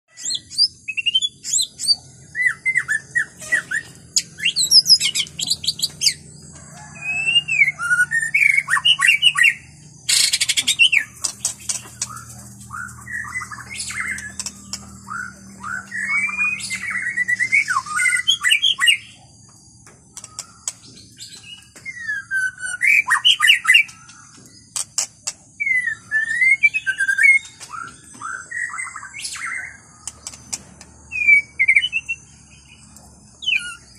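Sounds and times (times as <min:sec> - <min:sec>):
bird singing whistled phrases: 0:00.1 - 0:05.9, 0:06.8 - 0:11.1, 0:12.1 - 0:19.1, 0:21.3 - 0:24.0, 0:25.6 - 0:29.8, 0:31.1 - 0:32.3, 0:33.4 - 0:33.9.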